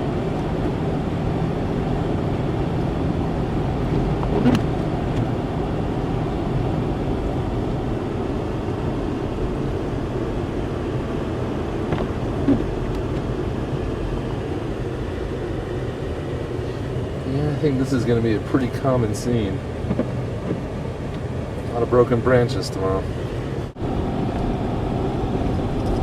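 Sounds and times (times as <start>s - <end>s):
car road and engine noise: 0.0s - 26.0s.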